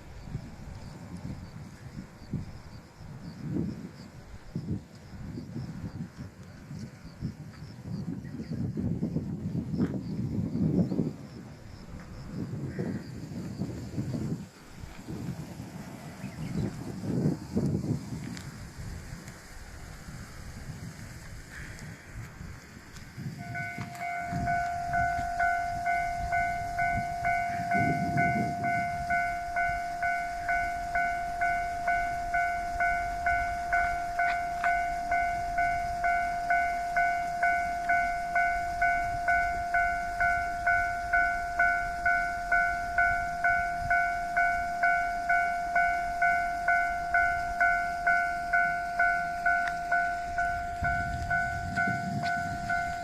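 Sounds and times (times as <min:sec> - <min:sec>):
level crossing bell ringing: 0:23.4 - 0:53.0.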